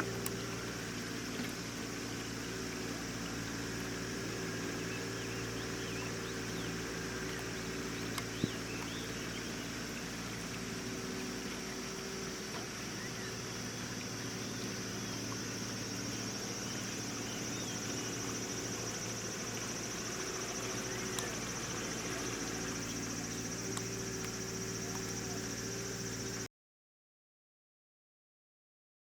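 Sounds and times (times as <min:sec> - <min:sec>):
high insect buzz: 0:00.0 - 0:26.5
low steady hum: 0:00.0 - 0:26.5
faint bird chirps: 0:04.3 - 0:12.2.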